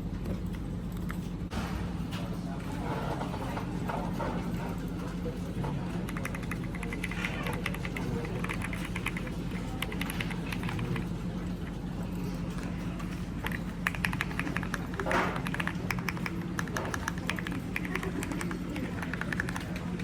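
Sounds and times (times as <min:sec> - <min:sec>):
mechanical keyboard typing: 0:06.0 - 0:11.2, 0:13.4 - 0:20.0.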